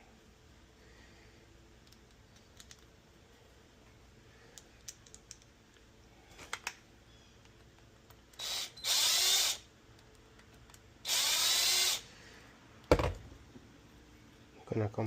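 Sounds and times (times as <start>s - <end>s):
small parts clicking: 1.8s - 3.0s, 4.5s - 6.8s, 7.4s - 10.9s
cordless drill whining: 8.4s - 9.7s, 11.0s - 12.1s.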